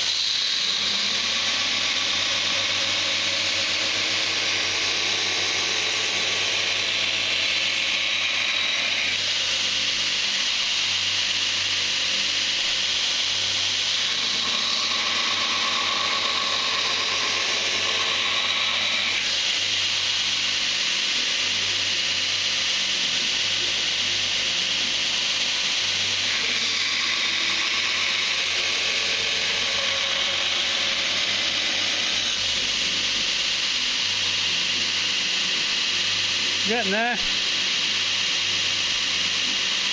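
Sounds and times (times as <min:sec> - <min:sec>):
belt grinder hissing on steel: 0:00.0 - 0:39.9.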